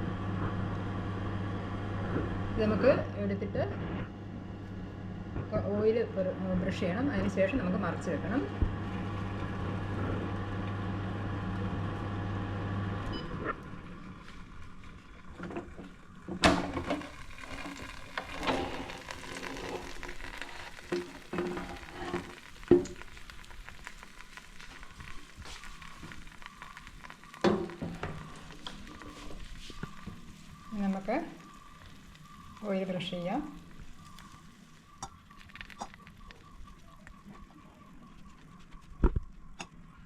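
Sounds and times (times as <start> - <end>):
air fryer fan humming: 0.0 - 14.2, 15.8 - 34.4
chicken sizzling: 7.0 - 13.1, 16.0 - 38.7.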